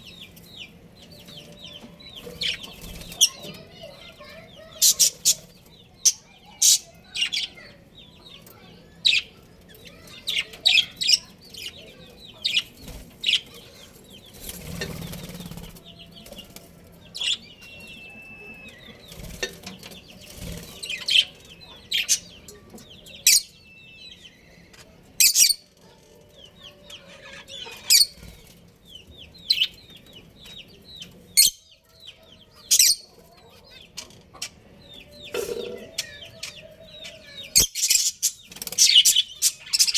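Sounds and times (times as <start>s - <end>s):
budgerigars chirping and chattering: 0.0s - 39.9s
wings flapping: 14.3s - 16.6s.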